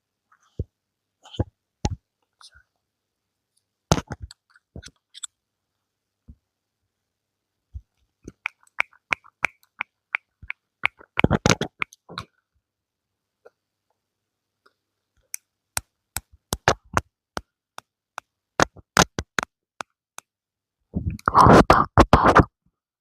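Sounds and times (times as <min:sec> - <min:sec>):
sharp clicks and taps: 0:07.8 - 0:12.3, 0:15.2 - 0:20.3.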